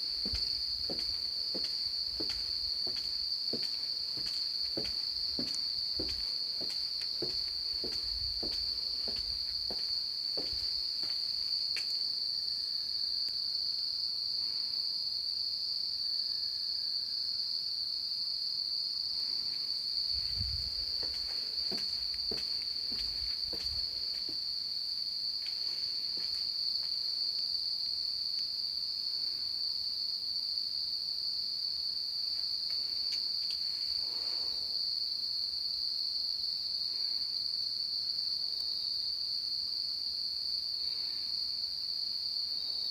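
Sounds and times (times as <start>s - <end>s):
insects high-pitched drone: 0.0s - 14.8s, 19.3s - 28.3s.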